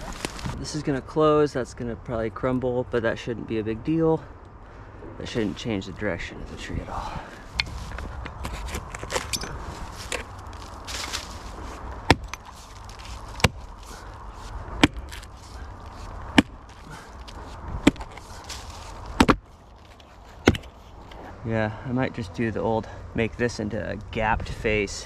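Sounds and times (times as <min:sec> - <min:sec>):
light knocks and scraping: 0:07.5 - 0:21.3
hand tool striking wood: 0:13.4 - 0:13.6, 0:14.8 - 0:15.2, 0:19.2 - 0:19.4.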